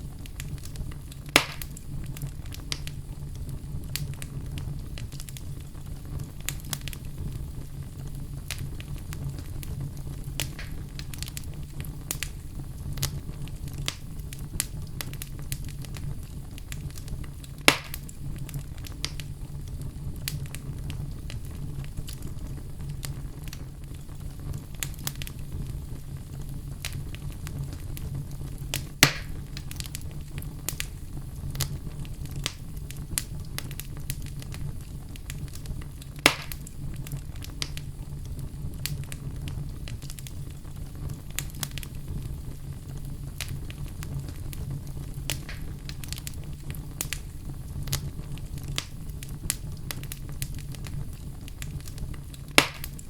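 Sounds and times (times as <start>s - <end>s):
loud fire pops: 0.0s - 53.0s
low fire rumble: 0.0s - 53.0s
wood fire crackling: 0.0s - 53.0s.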